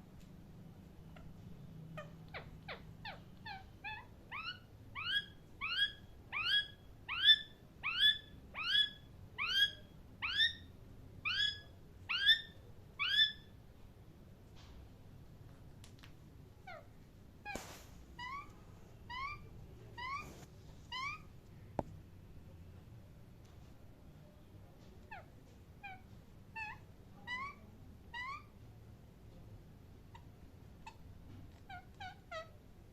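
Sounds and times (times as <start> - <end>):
parrot calling: 1.9 - 13.6, 18.2 - 18.5, 19.1 - 21.3, 25.1 - 28.5, 31.7 - 32.6.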